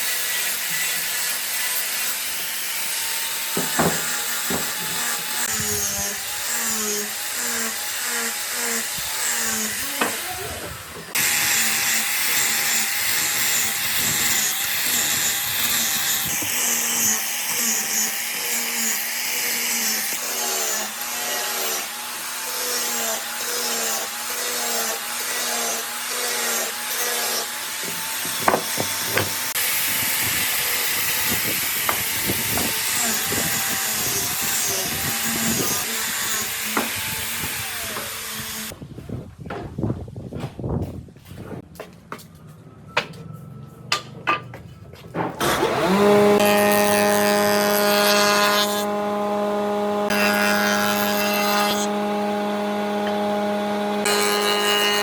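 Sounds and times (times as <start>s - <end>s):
hand sawing wood: 0.0s - 38.8s, 45.3s - 55.0s
sharp knocks: 3.6s - 5.0s, 27.8s - 29.4s.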